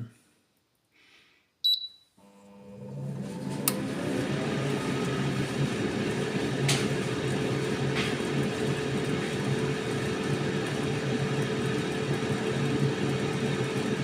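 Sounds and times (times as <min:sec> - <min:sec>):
air fryer beep: 0:01.6 - 0:02.1
air fryer fan whirring: 0:02.2 - 0:14.0.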